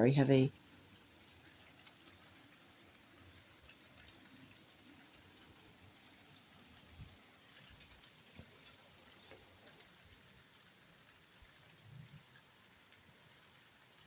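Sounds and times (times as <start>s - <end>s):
small ticks: 3.3s - 5.2s.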